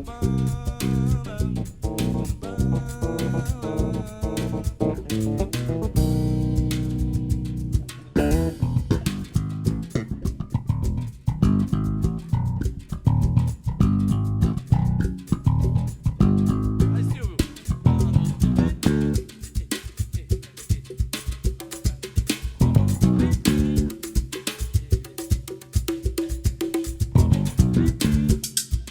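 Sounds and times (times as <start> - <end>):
electric bass slapped melodic lines: 0.0 - 19.3, 22.6 - 23.9, 27.1 - 28.4
percussion strikes: 0.0 - 28.9.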